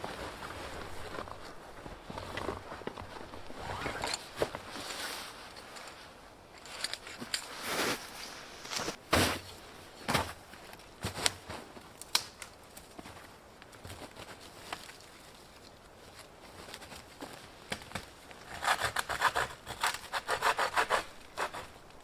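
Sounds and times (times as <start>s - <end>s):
camping gear rustling and clicking: 0.0s - 18.6s
twigs crunching and snapping: 10.7s - 13.0s.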